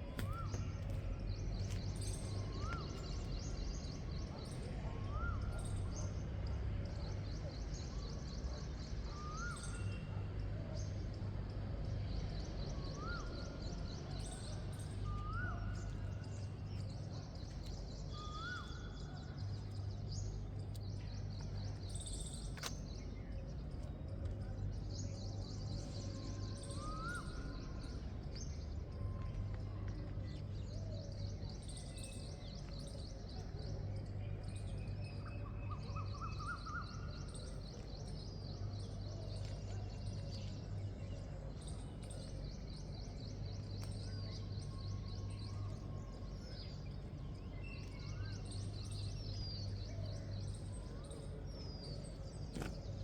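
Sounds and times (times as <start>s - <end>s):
birds chirping and whistling: 12.7s - 16.4s, 17.7s - 23.0s.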